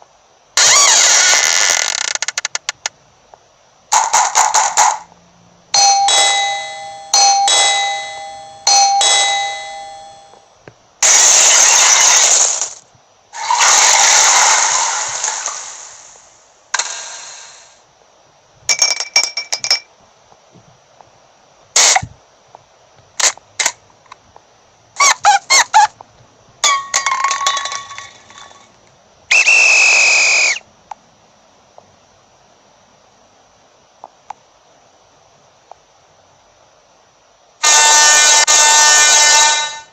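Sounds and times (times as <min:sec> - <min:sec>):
sharp clicks: 0:01.9 - 0:03.0.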